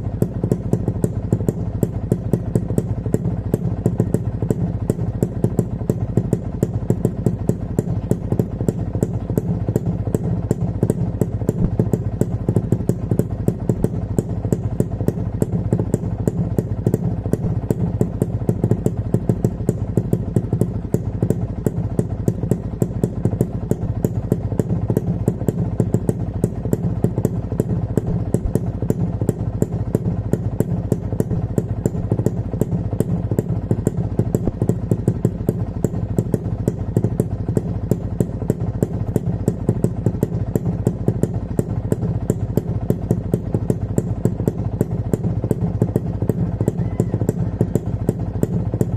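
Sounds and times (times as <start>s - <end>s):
motorcycle engine idling: 0.0s - 48.9s.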